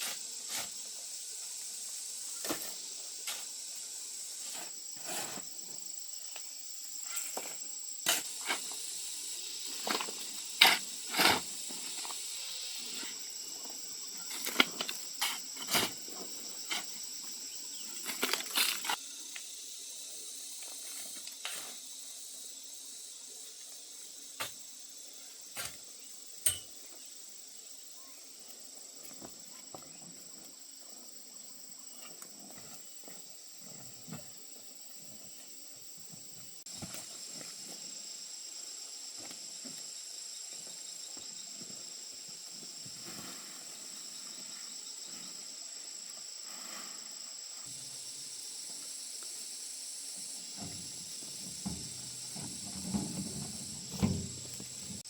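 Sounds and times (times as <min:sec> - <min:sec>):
insect chorus drone: 0:00.0 - 0:55.0
sharp knocks and rustles: 0:50.5 - 0:55.0.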